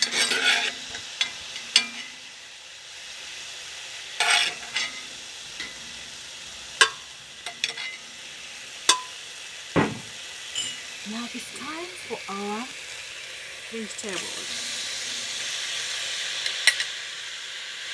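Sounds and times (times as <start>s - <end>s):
utensil scraping and clicking on wok: 0.0s - 11.0s, 13.9s - 17.1s
meat sizzling in a wok: 0.0s - 17.9s.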